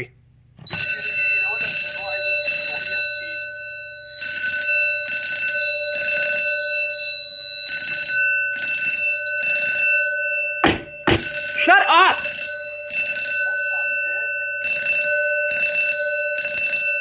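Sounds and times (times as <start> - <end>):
fire alarm blaring: 0.6 - 17.0
steady ringing tone: 0.6 - 17.0.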